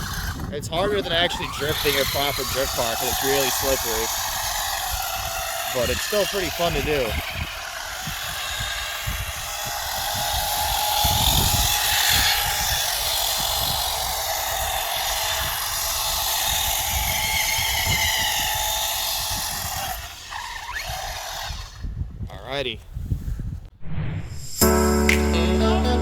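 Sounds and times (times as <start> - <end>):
electric motor whining: 0.0 - 21.8
gusting low rumble: 23.7 - 25.2.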